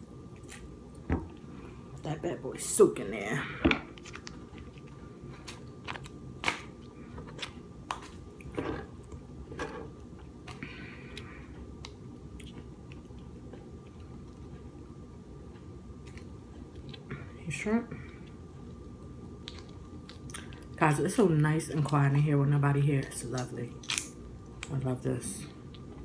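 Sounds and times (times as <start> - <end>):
steady low hum: 0.0 - 26.0
person chewing: 0.3 - 1.8, 3.9 - 14.7, 16.0 - 17.4, 18.0 - 20.8
crab shell cracking clicks: 23.4 - 24.7.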